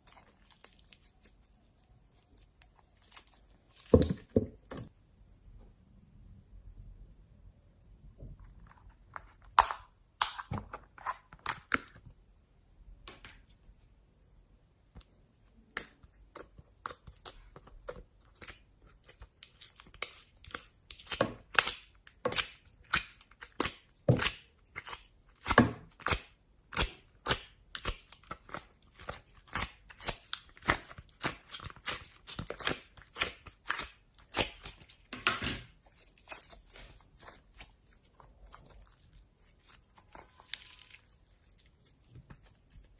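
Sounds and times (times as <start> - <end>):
slime crackling and popping: 36.0 - 42.9.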